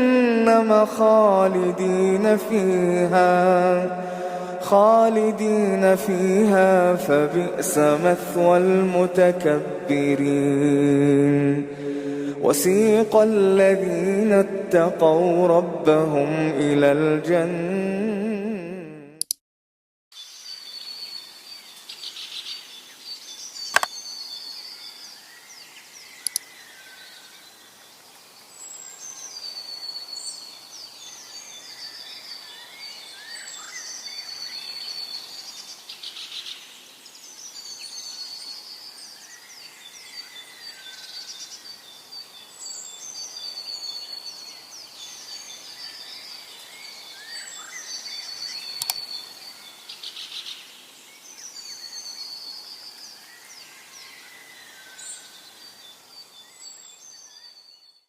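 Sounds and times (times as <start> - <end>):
birds chirping and trilling: 0.0 - 18.3, 20.2 - 58.0
steady outdoor hiss: 0.0 - 18.7, 20.2 - 58.0
sharp clicks: 23.7 - 23.9, 26.2 - 26.4, 48.8 - 49.0.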